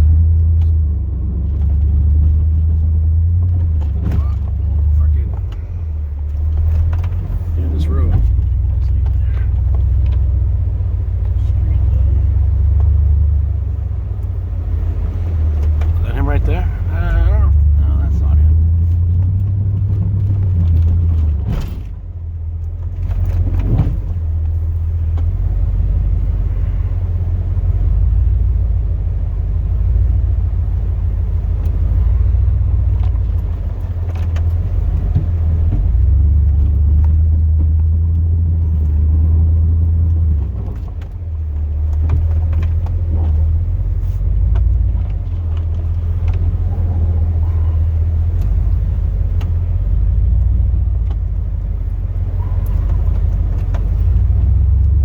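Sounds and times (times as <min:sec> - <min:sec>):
truck engine rumbling: 0:00.0 - 0:55.0.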